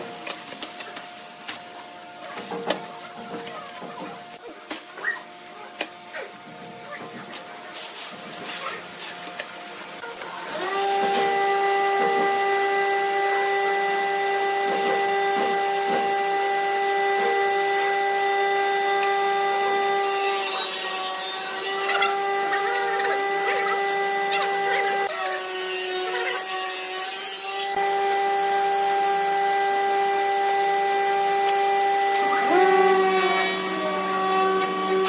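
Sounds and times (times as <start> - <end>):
wood lathe whining: 10.5 - 35.0.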